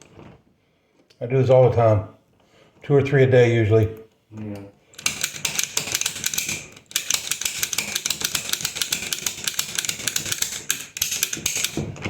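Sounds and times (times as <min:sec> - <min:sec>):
lock pick gun clicking rapidly: 0:04.9 - 0:11.8.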